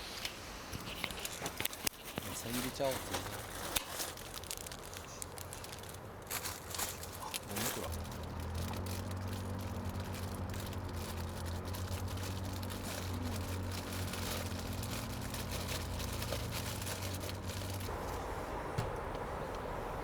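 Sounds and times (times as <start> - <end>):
food crackling over campfire: 0.1 - 20.0
steady low hum: 17.4 - 20.0.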